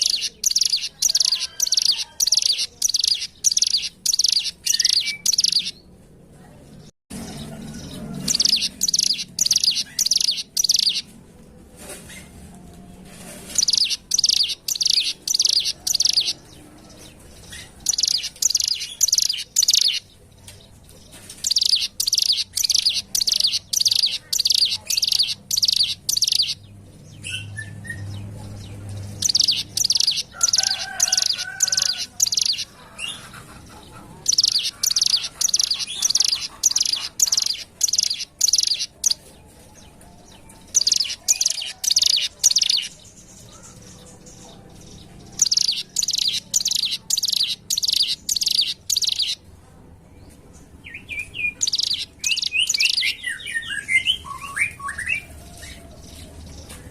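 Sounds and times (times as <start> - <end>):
bird singing buzzy notes: 7.8 - 11.0.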